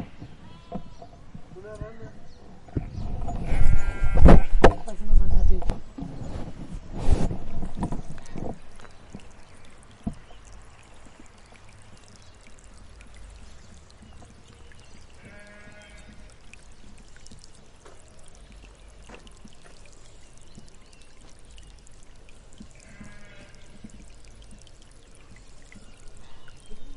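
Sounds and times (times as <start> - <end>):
sheep bleating: 3.5 - 4.6, 15.2 - 16.2, 22.8 - 23.7.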